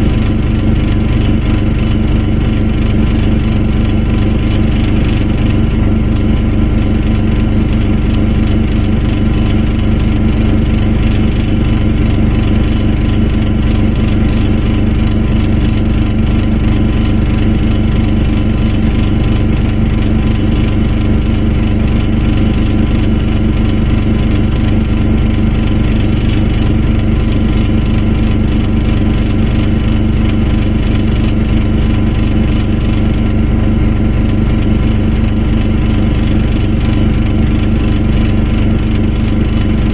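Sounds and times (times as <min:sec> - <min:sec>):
engine running steadily: 0:00.0 - 0:39.9
thin high-pitched whine: 0:00.0 - 0:39.9.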